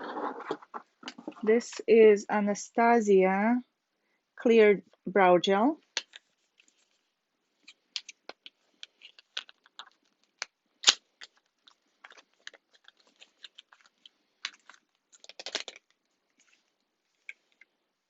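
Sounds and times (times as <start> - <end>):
crinkling rustle: 5.9 - 17.8
packaging clicks and taps: 7.6 - 16.0.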